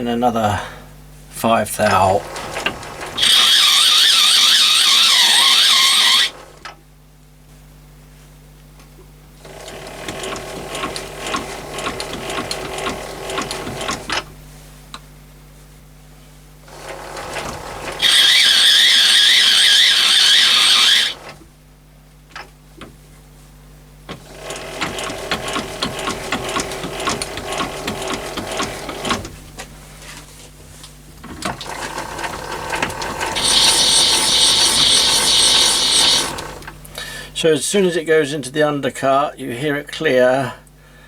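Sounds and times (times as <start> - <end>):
lathe gears rattling and clicking: 1.8 - 6.7, 9.4 - 14.3, 16.7 - 21.4, 24.1 - 29.6, 31.2 - 36.9
lathe threading tool screech: 2.1 - 6.6, 16.7 - 21.4, 24.2 - 29.2, 31.6 - 36.8.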